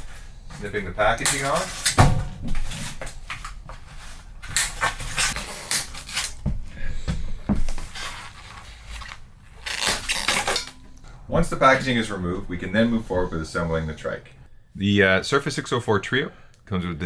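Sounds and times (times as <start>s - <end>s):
wrapping rustling: 0.0s - 11.2s
cutters snipping: 4.4s - 6.5s.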